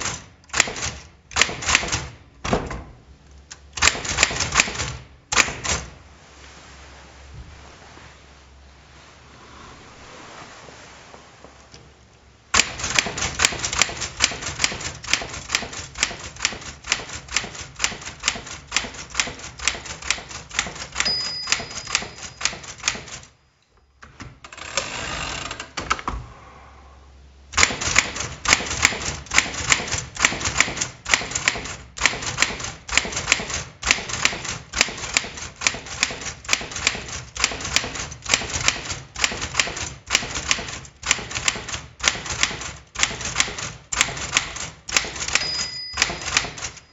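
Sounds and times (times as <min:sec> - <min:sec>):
typewriter keystrokes clacking: 0:00.0 - 0:02.8, 0:03.5 - 0:06.0, 0:12.5 - 0:23.3, 0:27.6 - 0:46.9
typewriter carriage return ratcheting: 0:12.5 - 0:23.3, 0:27.6 - 0:46.9
typewriter margin bell ring: 0:20.8 - 0:23.3, 0:45.1 - 0:46.9.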